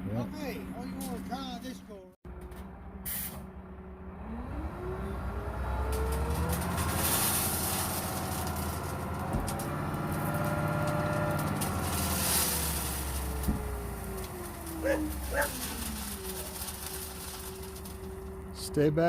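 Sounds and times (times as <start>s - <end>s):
dump truck engine running: 0.0s - 19.0s
brief hiss: 3.0s - 3.5s
dog yelping: 14.8s - 15.7s.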